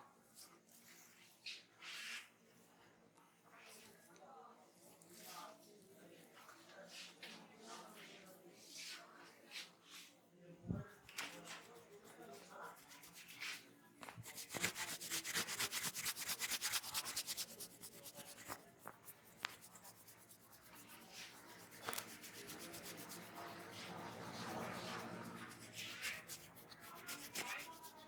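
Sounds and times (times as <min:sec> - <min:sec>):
hands rubbing oiled hair: 0:10.8 - 0:28.0.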